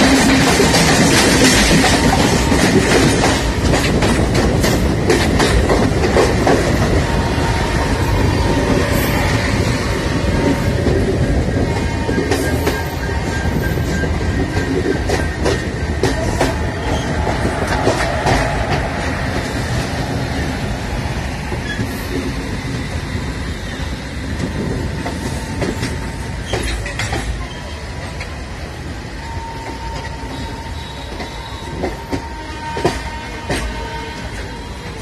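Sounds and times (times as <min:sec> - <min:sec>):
wheels clicking over rail joints: 0:00.0 - 0:06.9, 0:24.5 - 0:28.4
train wheels rumbling on track: 0:00.0 - 0:35.0.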